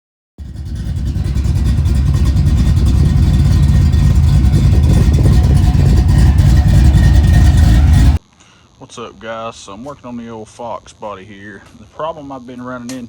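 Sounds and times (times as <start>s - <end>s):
car engine running loud: 0.4s - 8.2s.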